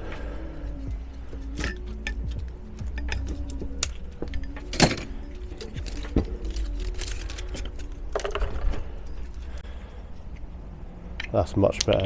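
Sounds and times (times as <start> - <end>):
faint background music: 0.0 - 12.0
hand tools clinking on metal: 1.5 - 9.6.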